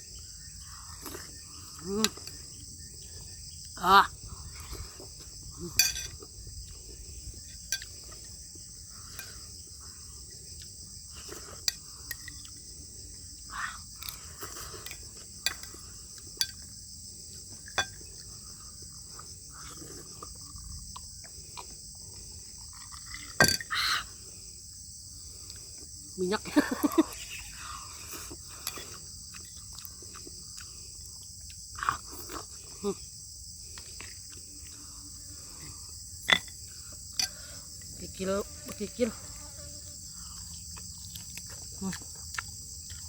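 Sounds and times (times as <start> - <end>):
crickets chirring: 0.0 - 43.0
wet chewing and sucking: 17.3 - 23.4, 27.9 - 32.8, 33.6 - 36.0, 40.2 - 43.0.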